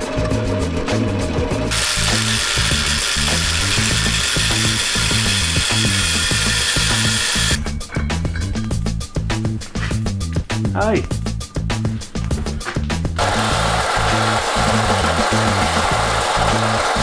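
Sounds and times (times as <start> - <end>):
background music with bass line: 0.0 - 1.7, 7.5 - 17.0
power tool running: 1.7 - 7.7, 13.2 - 17.0.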